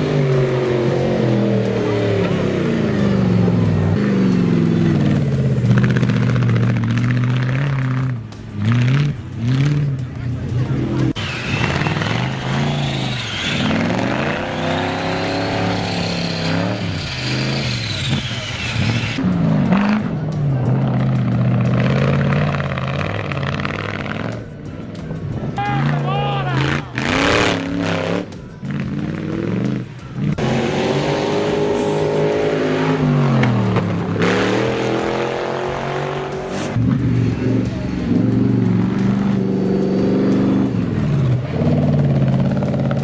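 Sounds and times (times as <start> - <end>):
electric motor and gears whining: 11.1 - 20.0.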